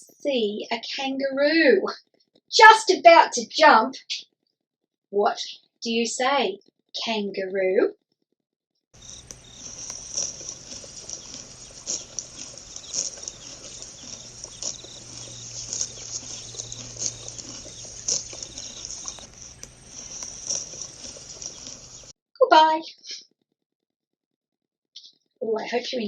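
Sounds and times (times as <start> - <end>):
insect chirring: 9.0 - 22.1
low hum: 9.0 - 22.1.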